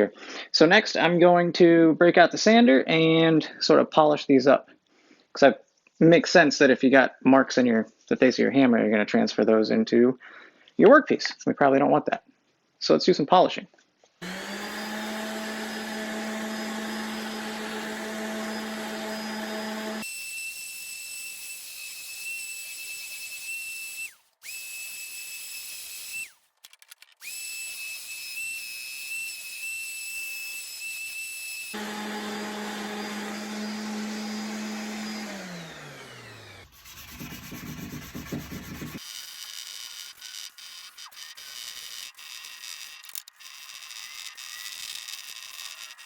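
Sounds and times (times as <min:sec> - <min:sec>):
electric sander whining: 0:14.2 - 0:20.1, 0:30.5 - 0:46.0
motor winding down: 0:14.2 - 0:20.1, 0:30.6 - 0:46.0.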